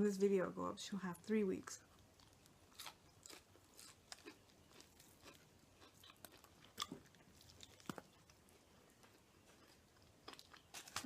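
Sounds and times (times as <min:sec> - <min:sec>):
chewing and biting food: 0:01.9 - 0:11.0
wet mouth clicks and crunches: 0:02.0 - 0:08.4.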